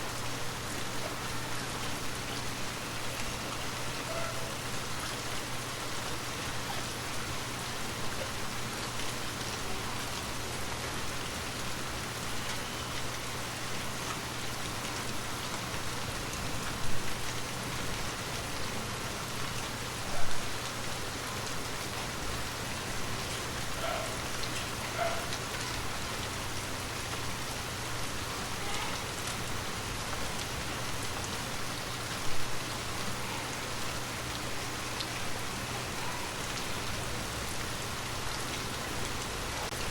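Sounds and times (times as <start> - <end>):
gentle rain falling: 0.0 - 39.9.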